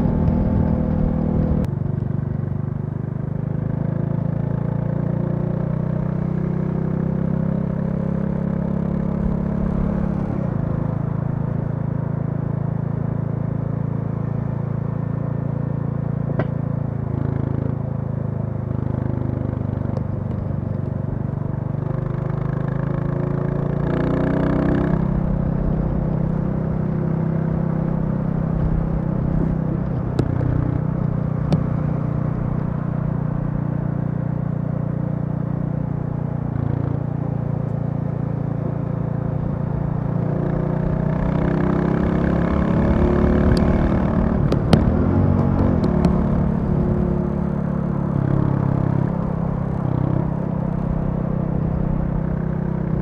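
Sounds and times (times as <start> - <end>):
motorcycle engine running: 0.0 - 53.0.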